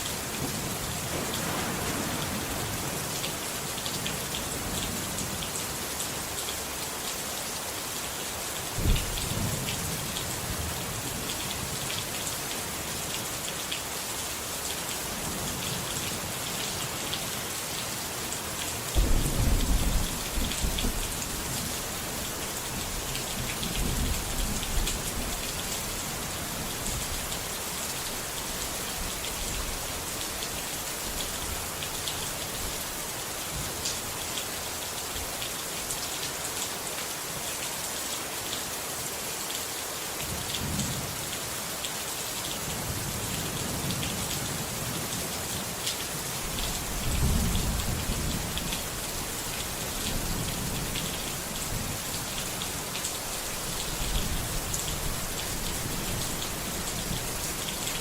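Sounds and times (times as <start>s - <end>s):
steady rain falling: 0.0s - 58.0s
thunder rumbling: 0.4s - 3.3s, 19.0s - 23.0s.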